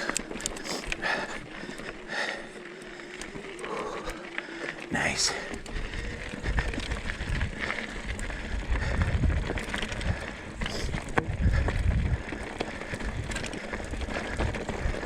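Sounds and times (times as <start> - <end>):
rocks clicking against wheel: 0.0 - 15.0
tyres crunching on loose stones: 0.0 - 15.0
wind rumble on microphone: 5.0 - 15.0.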